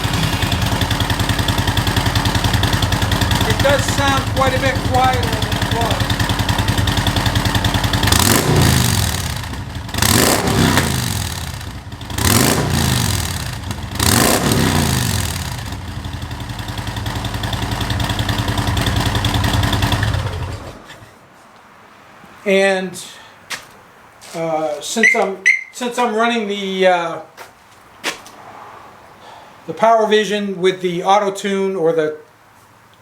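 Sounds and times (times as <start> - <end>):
motorcycle engine idling and revving: 0.0 - 21.0.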